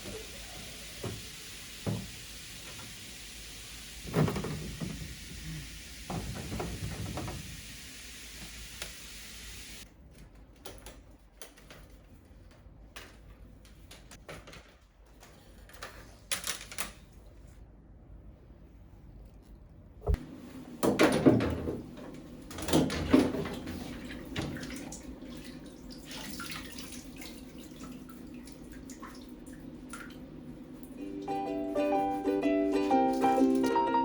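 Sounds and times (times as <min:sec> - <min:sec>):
heavy thumps: 0:20.0 - 0:20.2.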